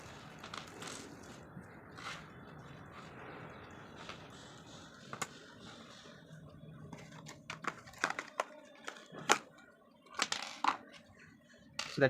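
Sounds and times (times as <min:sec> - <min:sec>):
plastic parts clicking and tapping: 0:07.0 - 0:09.5, 0:10.1 - 0:11.0.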